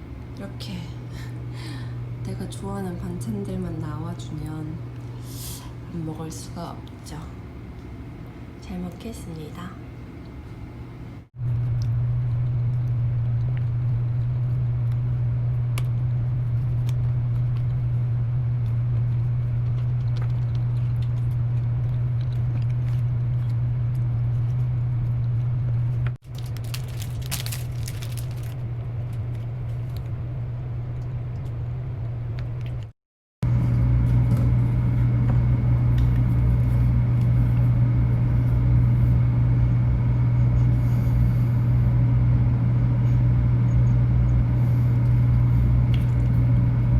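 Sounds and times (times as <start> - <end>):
steady low hum: 0.0 - 46.9
crackling and rustling: 26.2 - 30.1.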